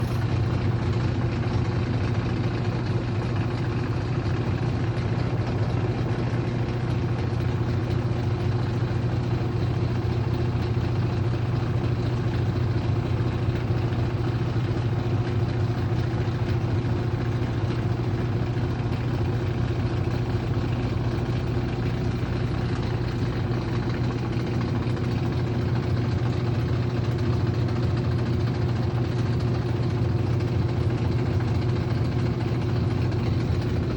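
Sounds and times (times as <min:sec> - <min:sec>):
washing machine motor hum: 0:00.0 - 0:33.9.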